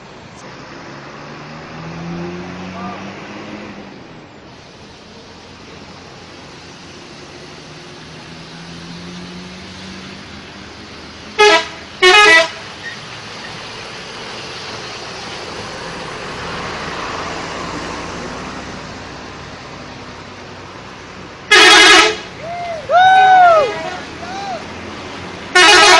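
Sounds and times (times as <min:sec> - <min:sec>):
road traffic noise: 0:00.0 - 0:25.9
vehicle passing: 0:00.5 - 0:04.2, 0:05.2 - 0:25.9
bus horn blasts: 0:11.4 - 0:12.6, 0:21.5 - 0:22.4, 0:25.5 - 0:25.9.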